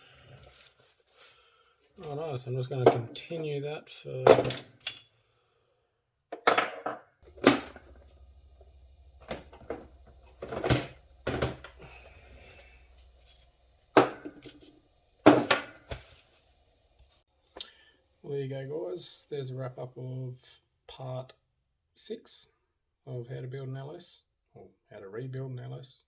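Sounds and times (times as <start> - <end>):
faint low hum: 7.2 - 17.2.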